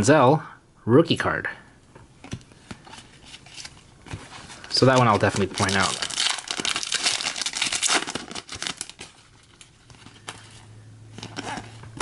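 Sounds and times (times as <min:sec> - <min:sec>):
card pack wrapper tearing and crinkling: 0:03.4 - 0:10.4.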